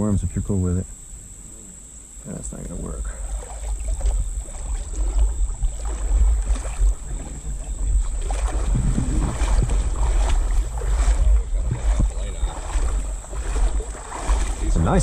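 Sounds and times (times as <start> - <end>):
high-pitched insect drone: 0.0 - 15.0
wind buffeting microphone: 3.2 - 15.0.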